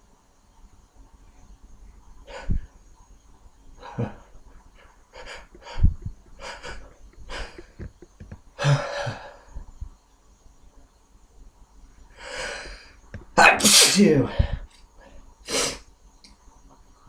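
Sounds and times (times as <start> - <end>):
man sniffing and gasping: 5.2 - 7.8, 15.5 - 15.9
sharp intake of breath: 12.2 - 13.0, 15.4 - 15.9.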